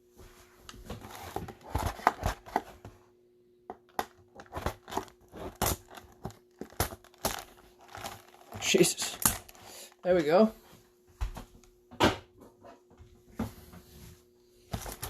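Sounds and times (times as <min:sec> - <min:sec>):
plastic wrap crinkling: 0:04.2 - 0:10.2
knife cutting shrink wrap: 0:04.4 - 0:09.6.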